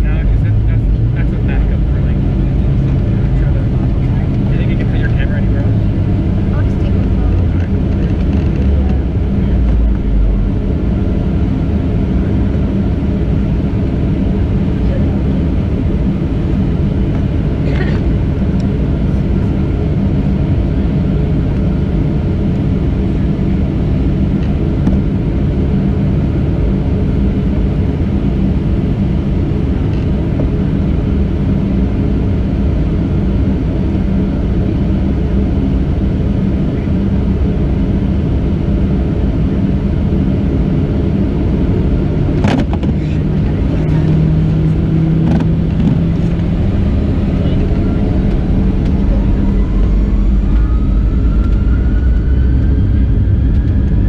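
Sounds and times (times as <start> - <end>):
jet engines rumbling in cabin: 0.0 - 54.0
low steady hum: 0.0 - 54.0.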